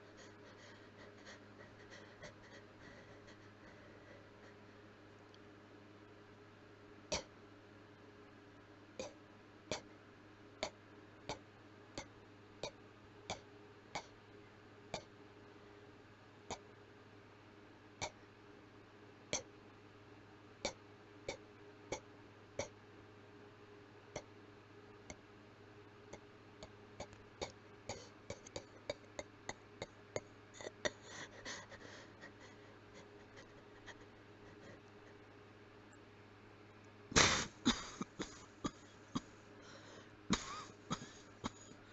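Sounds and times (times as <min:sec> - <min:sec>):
person coughing with mouth closed: 0:37.2 - 0:39.3, 0:40.3 - 0:41.9.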